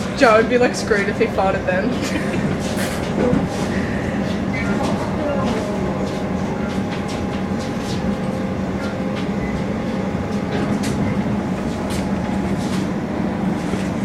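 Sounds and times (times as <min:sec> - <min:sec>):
faint whine: 0:00.0 - 0:14.0
train rumble: 0:00.0 - 0:14.0.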